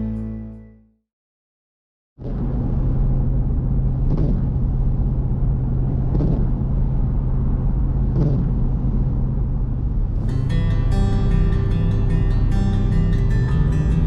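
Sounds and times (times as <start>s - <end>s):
guitar music: 0.0s - 0.8s, 10.2s - 14.0s
vehicle engine and tyre rumble: 2.2s - 14.0s.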